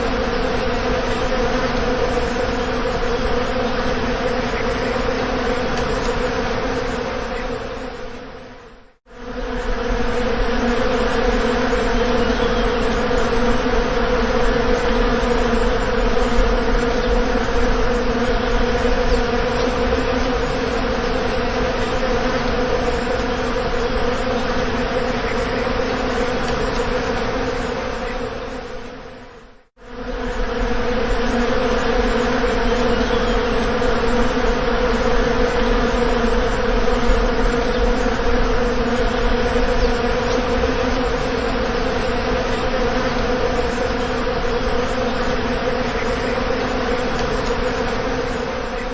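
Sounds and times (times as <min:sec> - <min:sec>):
bees buzzing: 0:09.1 - 0:29.2, 0:29.8 - 0:48.9.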